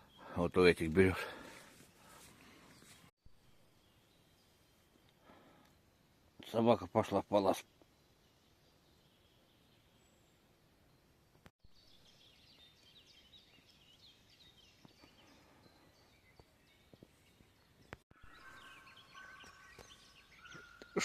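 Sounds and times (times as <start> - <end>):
faint bird chirping: 0.0 - 21.0.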